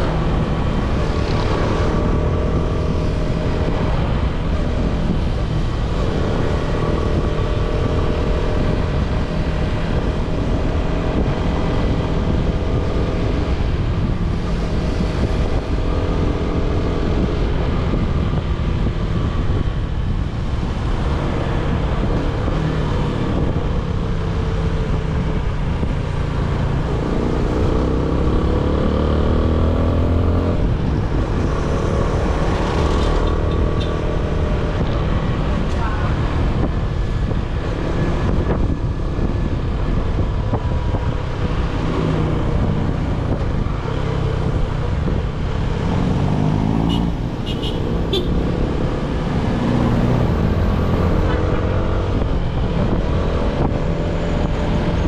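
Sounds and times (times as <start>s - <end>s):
motorcycle engine revving: 41.5s - 55.0s.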